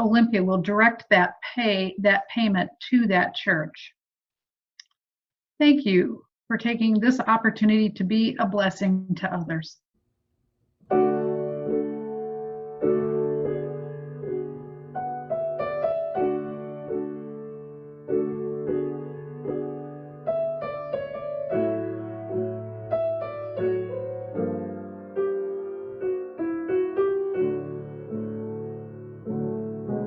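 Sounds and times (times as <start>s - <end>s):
solo piano piece: 10.9s - 30.0s.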